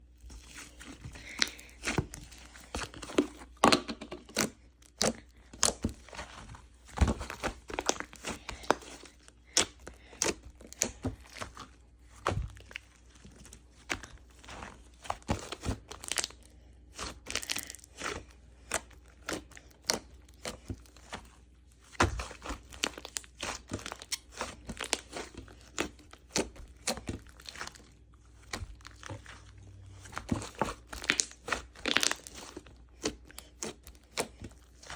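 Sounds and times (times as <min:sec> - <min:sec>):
slime popping and crackling: 0:30.2 - 0:34.9.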